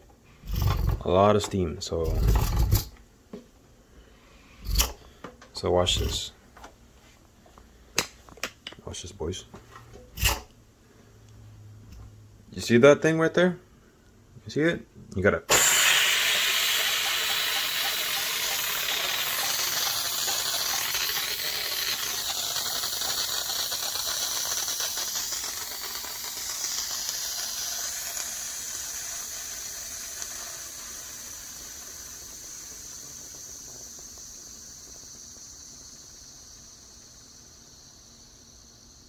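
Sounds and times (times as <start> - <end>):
steam hissing from pressure cooker: 0.0 - 1.1, 2.1 - 2.9, 4.6 - 5.1, 5.8 - 6.3, 10.2 - 10.5, 15.5 - 39.0.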